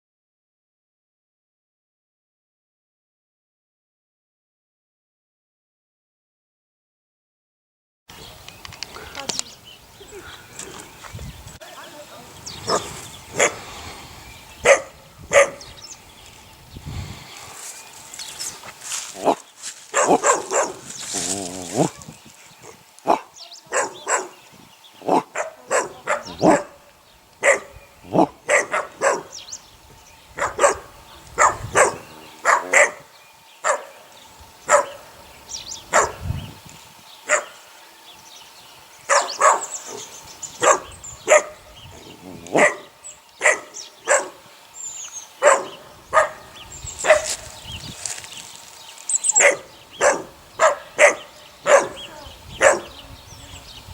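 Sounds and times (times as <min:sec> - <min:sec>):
puppies barking: 0:12.6 - 0:13.8, 0:14.6 - 0:15.8, 0:18.9 - 0:24.4, 0:25.0 - 0:29.6, 0:30.4 - 0:35.2, 0:35.8 - 0:36.2, 0:37.3 - 0:37.6, 0:39.1 - 0:44.5, 0:45.3 - 0:47.6, 0:49.2 - 0:53.1.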